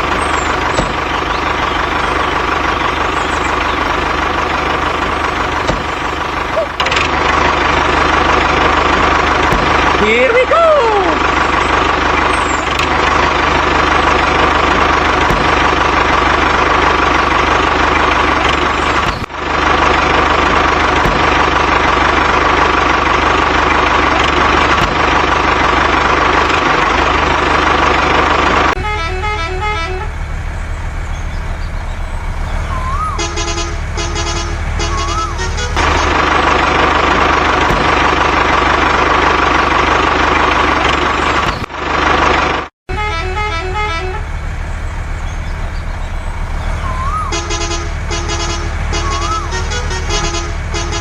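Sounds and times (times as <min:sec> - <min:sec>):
truck engine running: 0:00.0 - 0:51.0
short horn toots: 0:28.8 - 0:30.2, 0:32.9 - 0:35.8, 0:42.9 - 0:44.3, 0:47.1 - 0:51.0.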